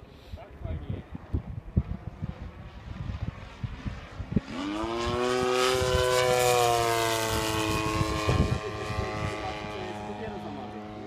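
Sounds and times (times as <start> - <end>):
model plane engine and propeller: 0.0 - 11.0
wind thumps on microphone: 1.0 - 6.1, 7.6 - 9.4.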